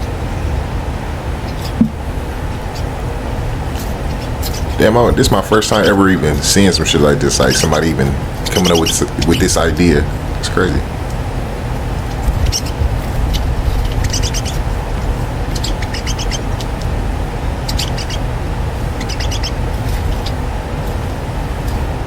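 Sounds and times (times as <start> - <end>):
small birds chirping: 0.0 - 22.0
steady low rumble: 0.0 - 22.0.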